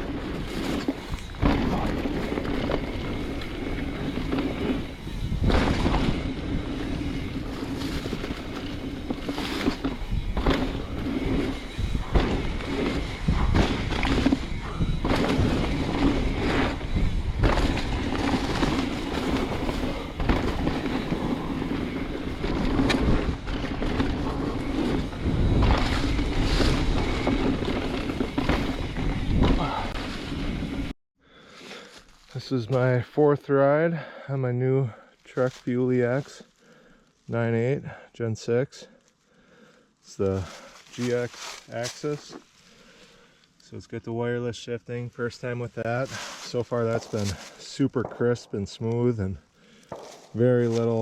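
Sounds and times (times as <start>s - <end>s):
bike knocks and rattles: 0.0s - 30.9s
bike tires crunching on dirt: 0.0s - 34.3s, 34.9s - 38.0s, 38.8s - 51.0s.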